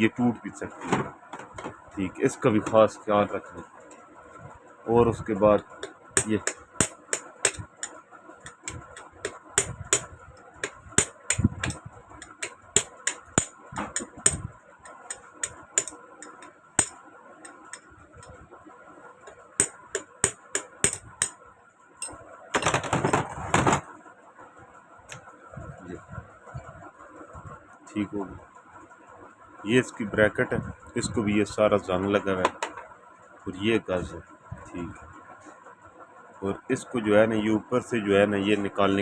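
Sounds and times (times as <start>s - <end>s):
screwdriver tapping on metal: 5.8s - 18.3s, 19.3s - 21.4s, 32.4s - 32.8s.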